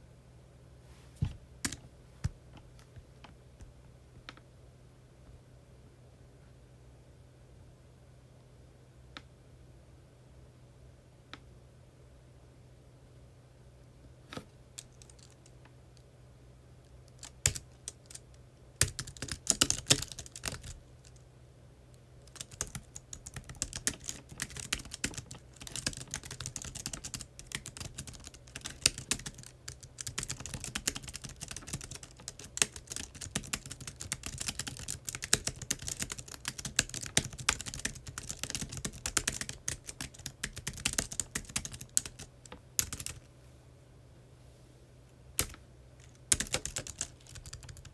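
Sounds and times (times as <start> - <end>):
typing on computer keyboard: 14.8 - 15.5, 17.1 - 21.2, 22.2 - 43.2, 45.4 - 47.9.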